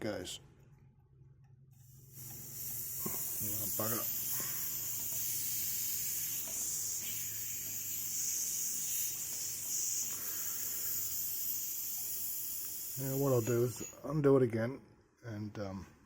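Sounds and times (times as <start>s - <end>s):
compressed air hissing: 1.8s - 14.0s.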